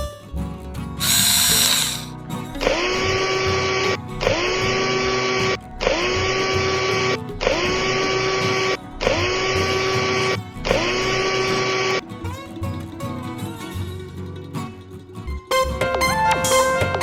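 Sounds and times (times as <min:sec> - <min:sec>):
music: 0:00.0 - 0:17.0
mechanical whirring: 0:01.0 - 0:12.2.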